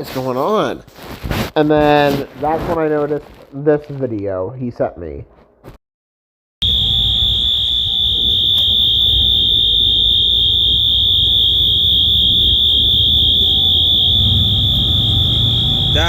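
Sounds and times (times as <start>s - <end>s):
high-pitched alarm horn tone: 6.6s - 16.0s.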